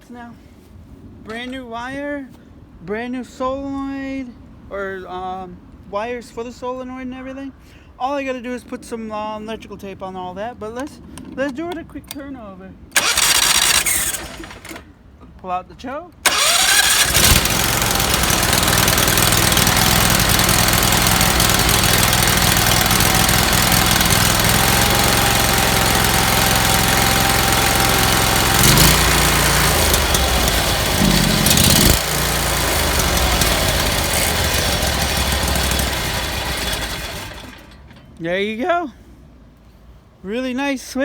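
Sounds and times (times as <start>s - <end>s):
engine starting and running: 13.0s - 14.9s, 16.2s - 38.2s.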